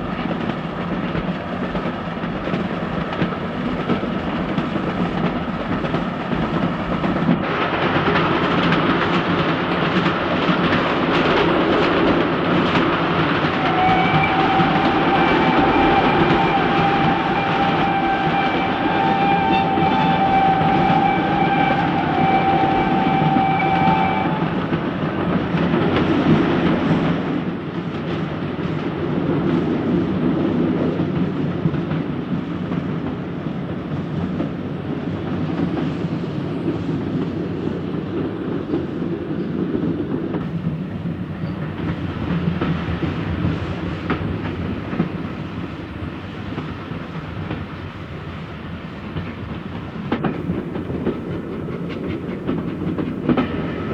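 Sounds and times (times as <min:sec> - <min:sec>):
steam train running on rails: 0:00.0 - 0:53.9
steam train whistle: 0:12.6 - 0:25.4.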